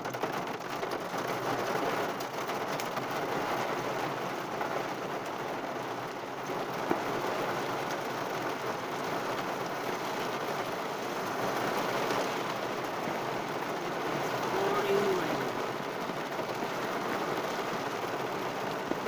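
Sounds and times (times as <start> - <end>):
heavy rain on a car: 0.0 - 19.0.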